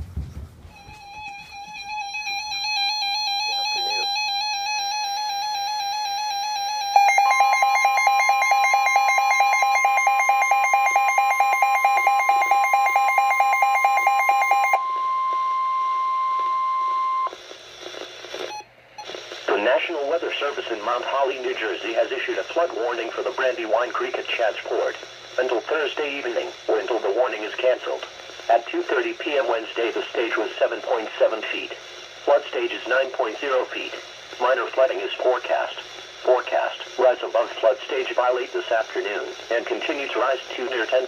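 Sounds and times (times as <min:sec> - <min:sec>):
warbling electronic alarm: 0:00.7 - 0:17.3.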